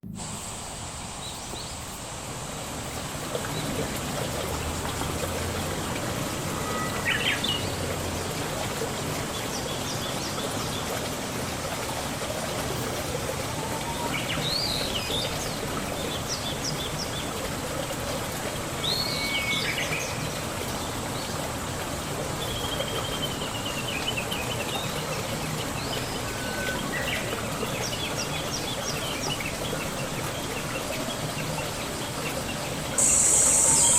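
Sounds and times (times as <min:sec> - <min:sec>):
steady background hiss: 0:00.0 - 0:08.2, 0:32.6 - 0:33.9
birds chirping: 0:32.2 - 0:33.9
bird trill: 0:33.0 - 0:33.9.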